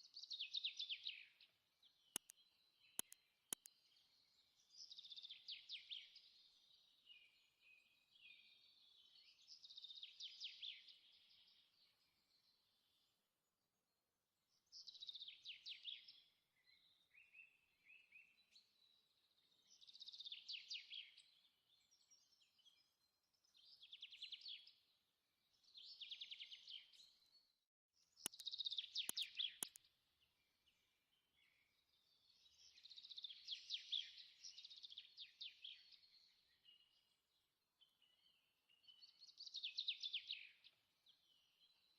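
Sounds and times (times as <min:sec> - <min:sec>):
sharp clicks: 0:02.2 - 0:02.4, 0:03.0 - 0:03.7, 0:28.3 - 0:29.8.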